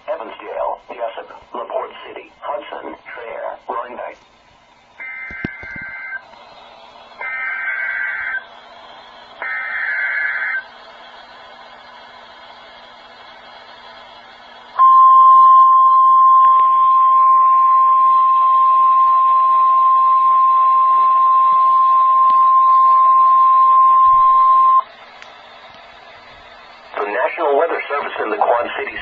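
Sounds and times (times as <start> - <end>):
steady alarm tone: 5.0 - 6.2, 7.2 - 8.4, 9.4 - 10.7, 14.8 - 24.9.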